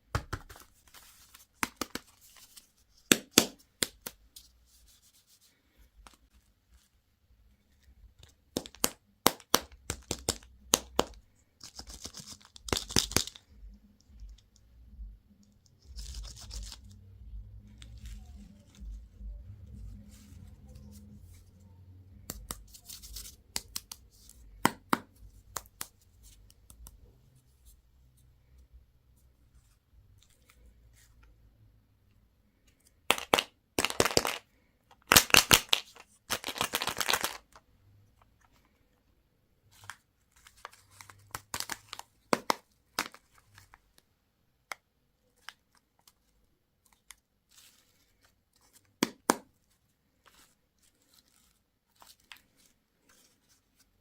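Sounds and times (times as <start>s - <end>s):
wrapper crinkling and clicking: 8.6s - 13.5s, 33.1s - 37.6s, 39.8s - 43.8s
candy packaging ripping: 11.7s - 13.4s, 33.1s - 37.6s, 39.8s - 43.2s.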